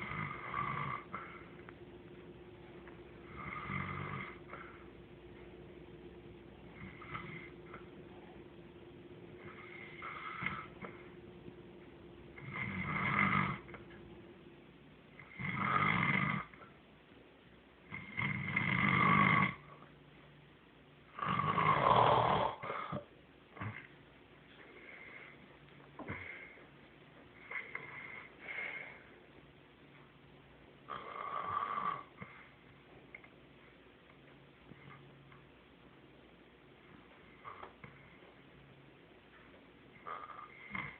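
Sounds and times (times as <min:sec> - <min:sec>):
snoring: 0:00.0 - 0:01.4, 0:03.2 - 0:04.8, 0:06.8 - 0:07.5, 0:09.4 - 0:11.0, 0:12.4 - 0:13.8, 0:15.2 - 0:16.6, 0:17.9 - 0:19.8, 0:21.2 - 0:23.0, 0:30.9 - 0:32.4, 0:40.0 - 0:40.9.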